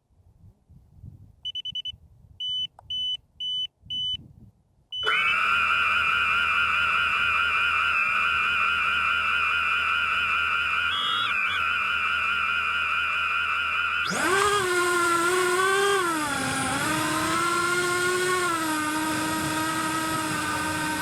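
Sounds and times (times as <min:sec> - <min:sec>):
short high beeps: 0:01.5 - 0:04.2, 0:10.9 - 0:11.6
drone motors whining: 0:05.0 - 0:21.0.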